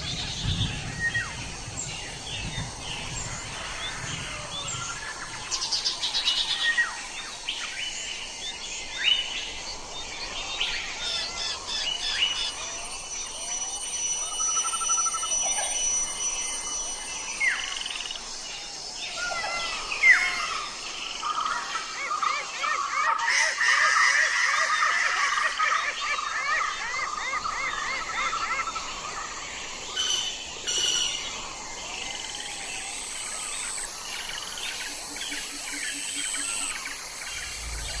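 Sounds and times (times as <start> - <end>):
birds chirping and trilling: 0.0 - 38.0
low rumble: 37.2 - 38.0.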